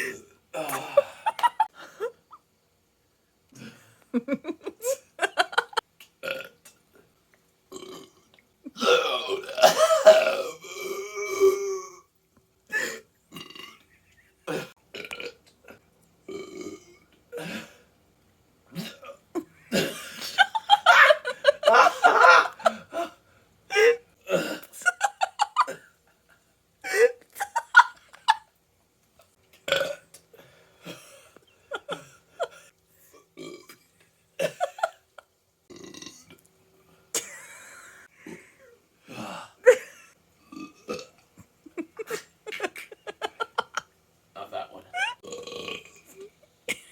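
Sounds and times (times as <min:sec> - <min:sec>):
person burping: 0:00.0 - 0:01.7, 0:06.2 - 0:06.6, 0:07.7 - 0:12.1, 0:12.7 - 0:17.8, 0:23.8 - 0:24.8, 0:29.7 - 0:30.1, 0:33.2 - 0:33.8, 0:35.7 - 0:36.4, 0:38.2 - 0:41.2, 0:44.4 - 0:46.9.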